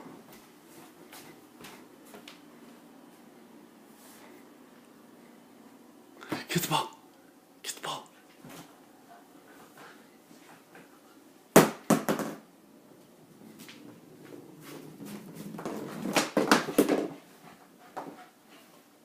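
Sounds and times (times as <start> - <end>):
ball knocks and thumps: 11.6 - 12.4, 14.9 - 17.2.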